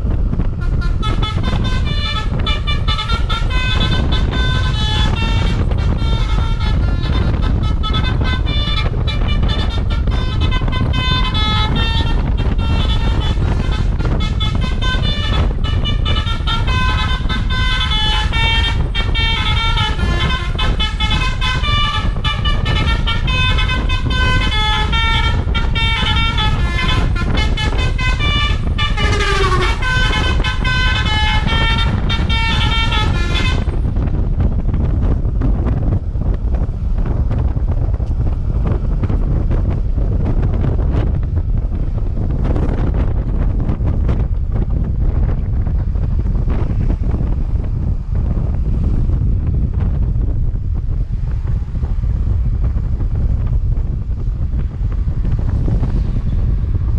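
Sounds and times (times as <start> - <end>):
bus horn melody: 0.0 - 35.4
steady low rumble: 0.0 - 56.9.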